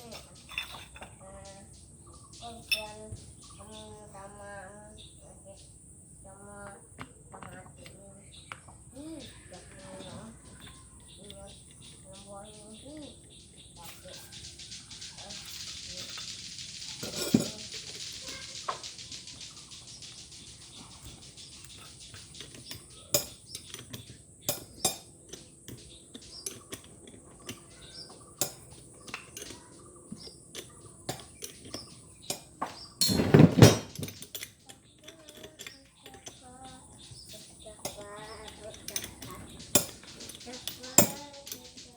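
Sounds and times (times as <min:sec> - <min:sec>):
metal parts clinking and tapping: 0:00.0 - 0:01.2, 0:17.0 - 0:18.9, 0:21.0 - 0:41.9.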